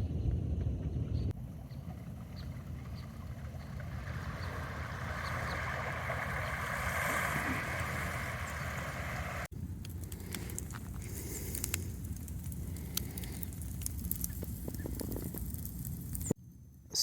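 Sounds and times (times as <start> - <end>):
rushing outdoor noise: 1.4 - 16.2.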